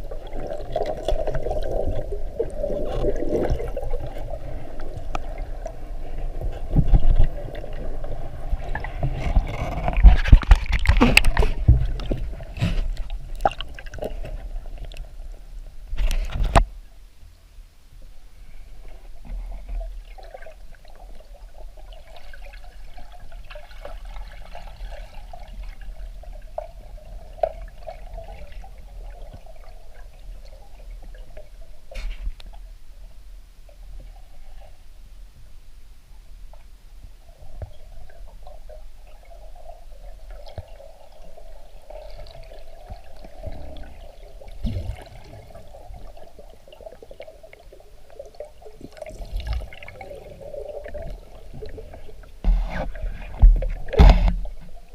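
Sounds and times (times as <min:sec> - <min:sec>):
water sloshing and gurgling: 0:00.0 - 0:16.9, 0:18.4 - 0:35.0, 0:36.4 - 0:54.9
loud knocks underwater: 0:09.0 - 0:13.6, 0:52.4 - 0:54.7.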